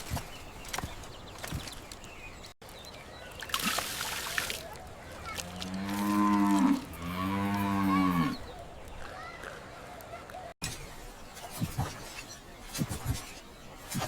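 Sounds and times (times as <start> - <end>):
cattle mooing: 5.5 - 8.4.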